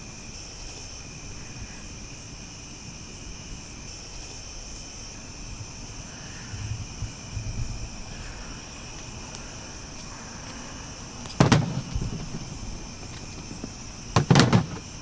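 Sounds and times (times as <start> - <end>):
crickets chirping: 0.0 - 15.0
soft low knocks: 6.5 - 8.2
loud thump: 11.4 - 12.4, 14.2 - 14.9.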